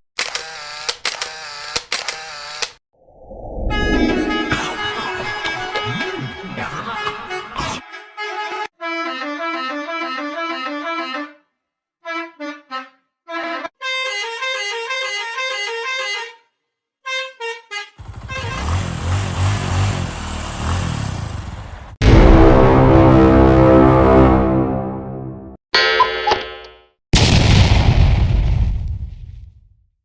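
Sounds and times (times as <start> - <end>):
loud sustained horn blast: 3.6 - 6.1, 17.4 - 25.6
distorted noisy pulsing horn: 3.7 - 6.1, 17.7 - 21.4, 22.0 - 25.2
bus horn melody: 4.2 - 25.6.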